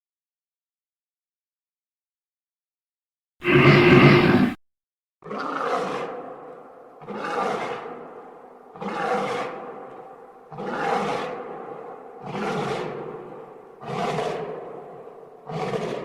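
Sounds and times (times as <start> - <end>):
animal roar: 3.4 - 4.6, 5.2 - 16.0.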